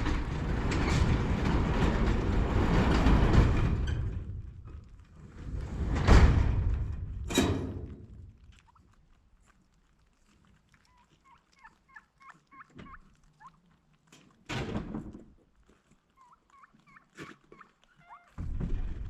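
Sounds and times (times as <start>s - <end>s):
low rumbling noise bursts: 0.0s - 8.5s, 18.4s - 19.0s
turkeys calling: 10.9s - 13.6s, 16.1s - 18.4s.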